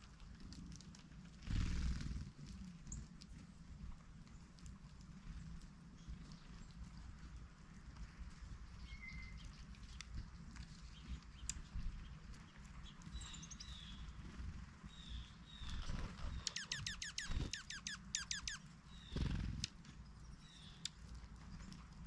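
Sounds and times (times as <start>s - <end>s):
bird calls with falling notes: 15.0s - 19.4s.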